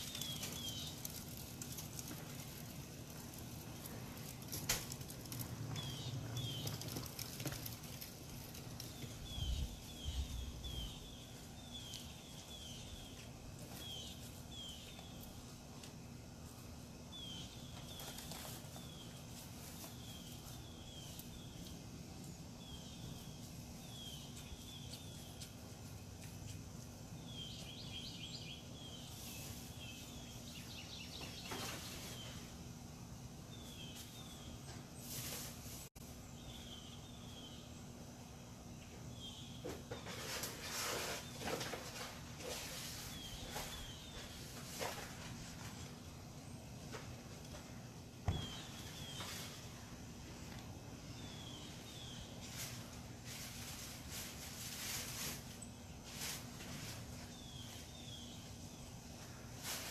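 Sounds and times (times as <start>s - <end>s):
bird singing: 0.0s - 1.9s, 5.3s - 8.0s, 8.6s - 15.4s, 17.0s - 25.6s, 27.2s - 32.6s, 36.2s - 40.4s, 48.2s - 49.8s, 51.0s - 52.7s
outdoor background noise: 0.0s - 59.9s.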